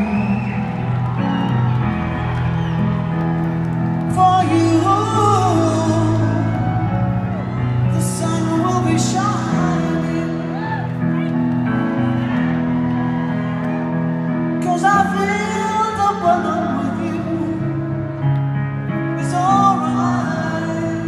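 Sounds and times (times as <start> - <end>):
person singing: 4.1 - 11.8, 14.6 - 18.4, 19.0 - 21.0.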